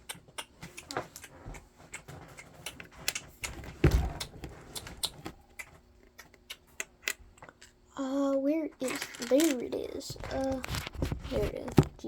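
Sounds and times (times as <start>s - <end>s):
plastic toy bricks clicking: 8.8s - 9.7s.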